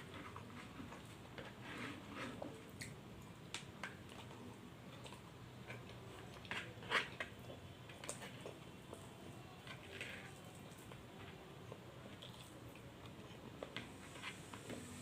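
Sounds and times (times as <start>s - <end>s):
crunching fried chicken: 11.6s - 13.7s.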